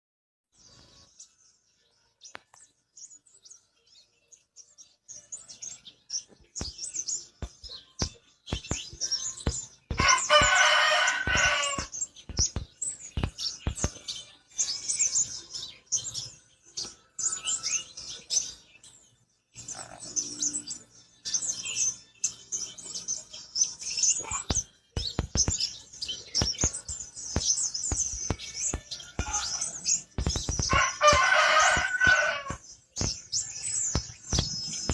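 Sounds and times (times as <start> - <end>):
songbird twittering chirps: 0.5 - 34.9
rooster crowing: 10.0 - 11.9, 30.7 - 32.6.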